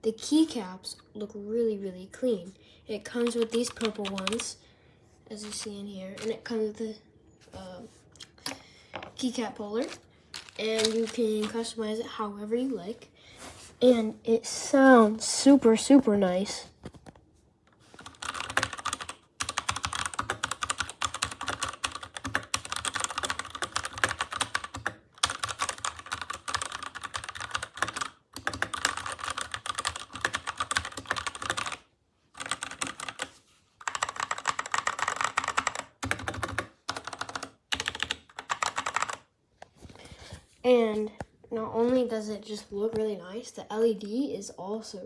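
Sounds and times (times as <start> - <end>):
mechanical keyboard typing: 3.2 - 4.6, 10.4 - 11.6, 18.0 - 31.8, 32.4 - 39.3.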